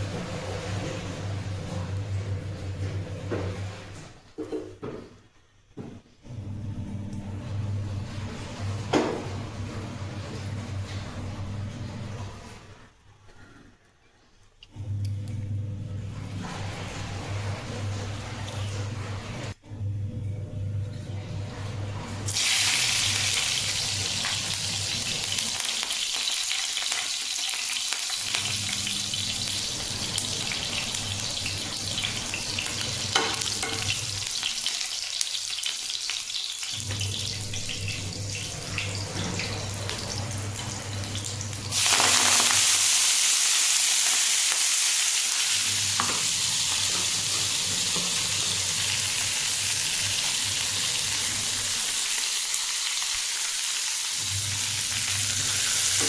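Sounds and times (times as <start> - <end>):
food sizzling in a pan: 22.3 - 56.0.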